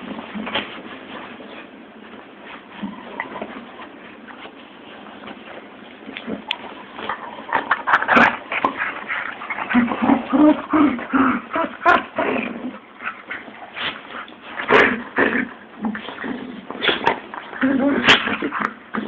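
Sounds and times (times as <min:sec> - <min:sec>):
dogs play-fighting cries: 0:06.1 - 0:19.0.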